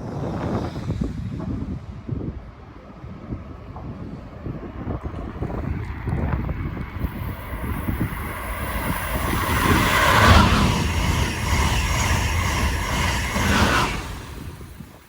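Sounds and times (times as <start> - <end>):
train wheels on rails: 5.0 - 15.0.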